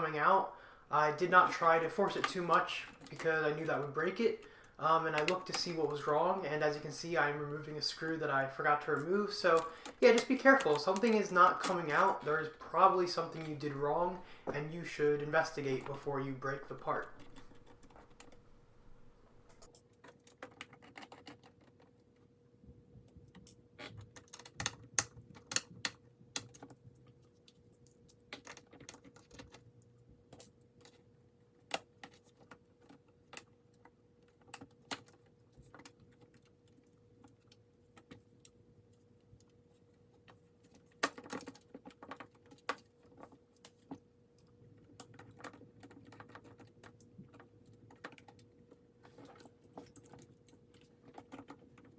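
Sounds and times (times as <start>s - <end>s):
faint steady hum: 0.0s - 51.9s
plastic laptop parts clicking: 15.7s - 18.4s, 19.5s - 22.0s, 23.3s - 38.6s, 40.2s - 51.9s.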